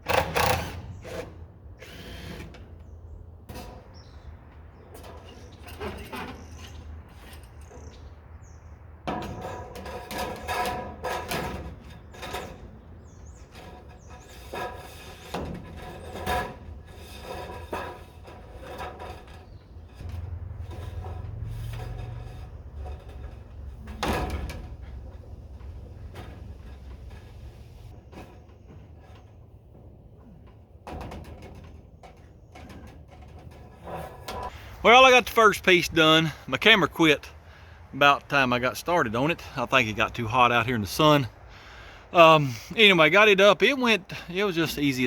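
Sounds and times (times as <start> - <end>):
metal trim knocking and rattling: 9.0 - 34.5.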